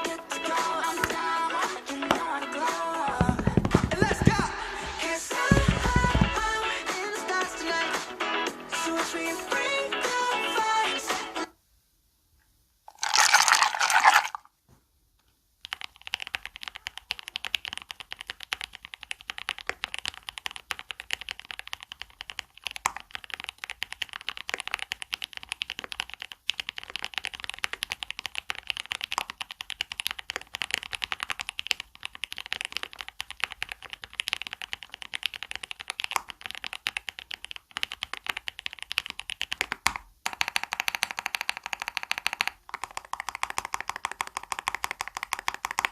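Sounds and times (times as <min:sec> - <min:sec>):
mechanical keyboard typing: 0:15.6 - 0:45.9.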